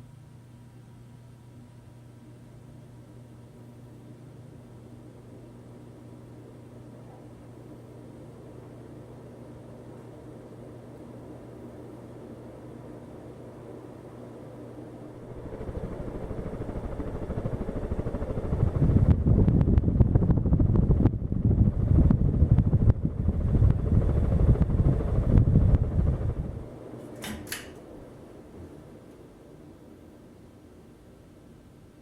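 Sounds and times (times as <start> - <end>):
fan air buffeting microphone: 4.7 - 30.0.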